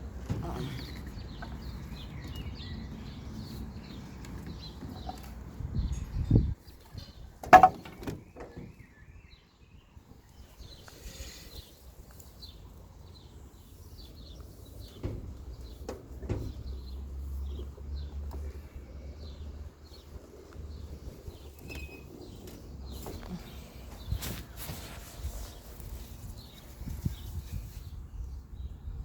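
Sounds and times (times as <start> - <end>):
birds chirping faintly: 0.2 - 29.0
sharp knocks and clunks: 7.4 - 8.8.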